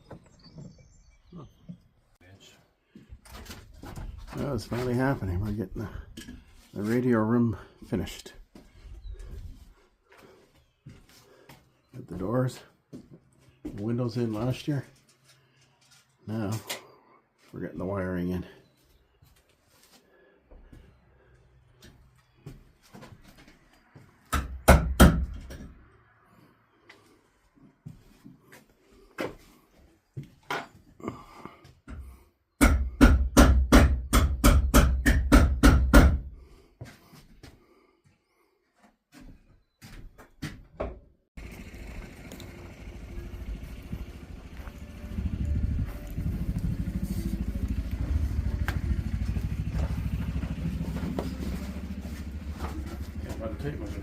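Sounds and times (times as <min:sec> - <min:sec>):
hammer striking wood: 0:24.3 - 0:25.5, 0:32.6 - 0:36.3
engine running: 0:41.4 - 0:54.0.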